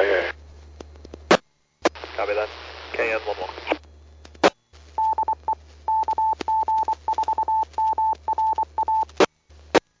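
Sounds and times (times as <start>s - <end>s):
morse code beeps: 5.0s - 9.1s.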